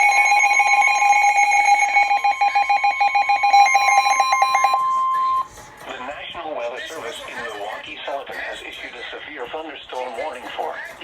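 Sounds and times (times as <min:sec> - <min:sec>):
two-tone alert alarm: 0:00.0 - 0:05.6.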